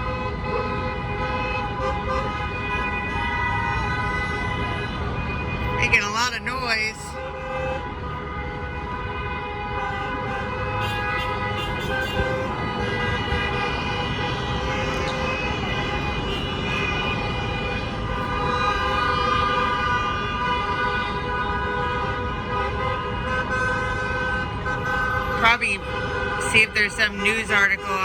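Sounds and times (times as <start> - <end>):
car horns honking: 0.0 - 28.0
traffic rumble: 0.0 - 28.0.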